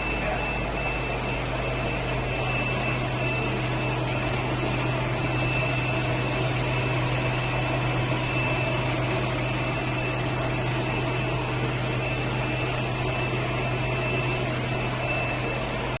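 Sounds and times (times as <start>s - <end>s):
machine running with hum and whine: 0.0s - 16.0s.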